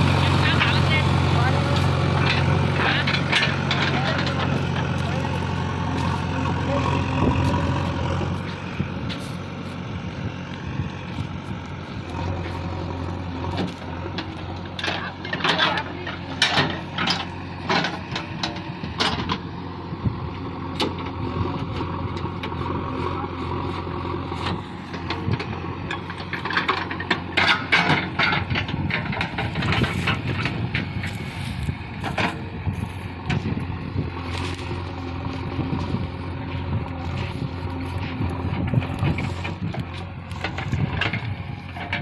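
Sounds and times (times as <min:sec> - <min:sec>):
diesel engine running: 0:00.0 - 0:42.0
sharp metal knocks and clanks: 0:02.1 - 0:05.0, 0:13.6 - 0:19.4, 0:25.1 - 0:30.9.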